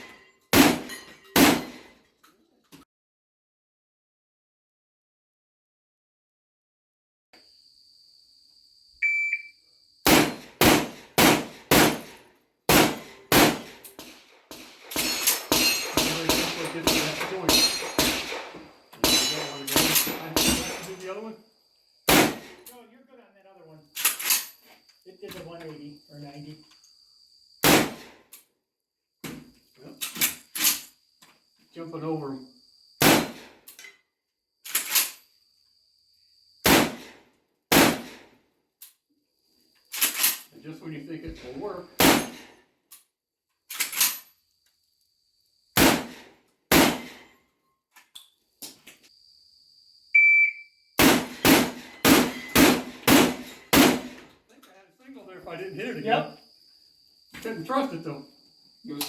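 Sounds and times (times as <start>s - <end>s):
shotgun firing: 0.6s - 1.8s, 10.1s - 20.9s, 22.1s - 22.6s, 27.6s - 28.1s, 33.0s - 33.5s, 36.7s - 37.1s, 37.7s - 38.2s, 42.0s - 42.4s, 45.8s - 47.2s, 51.0s - 54.2s
electronic shot timer beeps: 9.0s - 9.5s, 50.2s - 50.7s.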